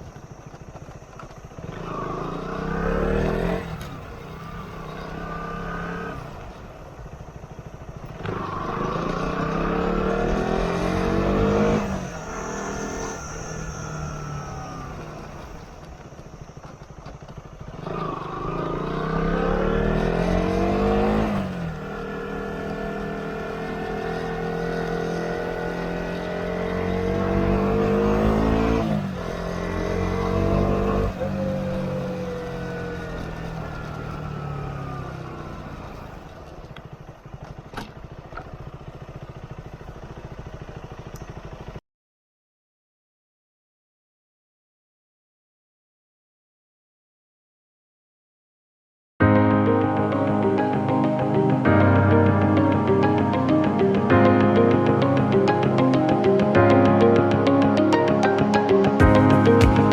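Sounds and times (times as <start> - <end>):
motorcycle engine revving: 0.0 - 41.8, 49.3 - 59.9.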